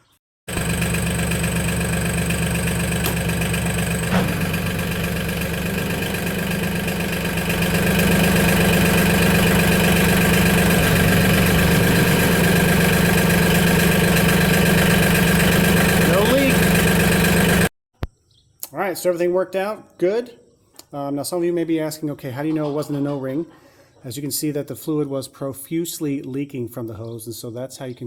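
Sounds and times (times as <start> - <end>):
tractor diesel engine running: 0.5 - 17.7.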